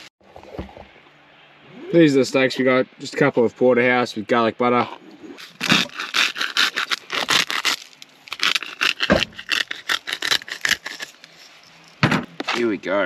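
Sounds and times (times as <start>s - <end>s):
cooking gear scraping and rattling: 5.4s - 12.8s
heavy thump: 12.0s - 12.5s.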